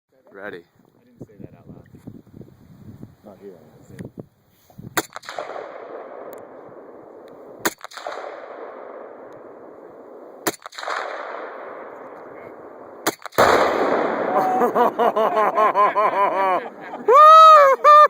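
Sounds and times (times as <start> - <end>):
rifle shots with rolling echo: 5.0 - 14.4
loud explosive blast: 13.4 - 14.7.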